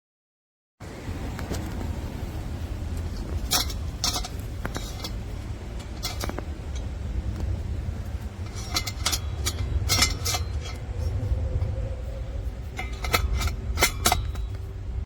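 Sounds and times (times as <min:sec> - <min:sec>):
low rumble: 0:00.8 - 0:15.0
metal parts clinking: 0:03.4 - 0:11.8, 0:12.5 - 0:14.8.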